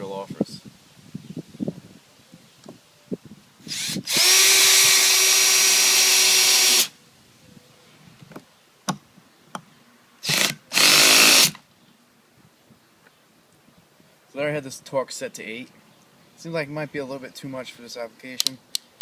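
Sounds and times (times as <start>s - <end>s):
drill motor driving screw: 3.7s - 6.9s, 10.2s - 11.6s.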